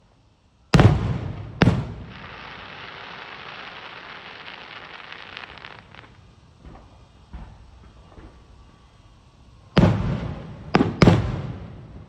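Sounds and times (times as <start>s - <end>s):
firework crackle: 0.0s - 12.0s
firework bangs: 0.7s - 6.8s, 9.8s - 12.0s.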